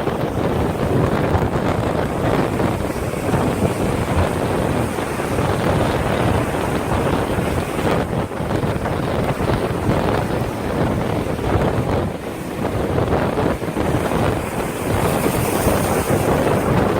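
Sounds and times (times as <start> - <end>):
ocean surf breaking: 0.0 - 16.9
wind buffeting microphone: 0.0 - 16.9.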